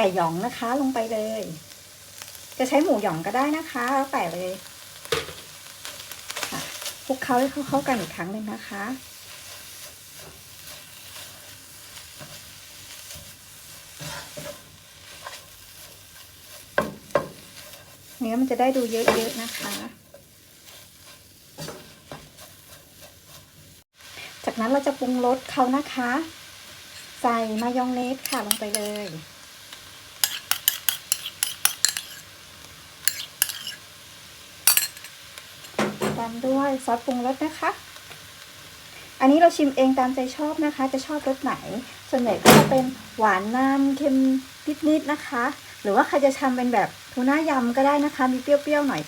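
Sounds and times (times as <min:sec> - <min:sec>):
food sizzling in a pan: 0:00.0 - 0:49.0
spatula scraping and stirring: 0:09.0 - 0:23.8, 0:26.6 - 0:34.0.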